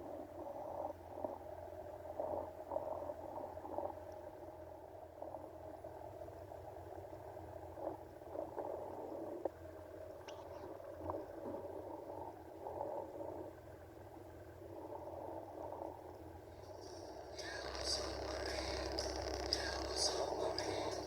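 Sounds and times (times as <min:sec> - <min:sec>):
faint click: 0:10.2 - 0:11.2
jet ski engine running: 0:16.6 - 0:21.0.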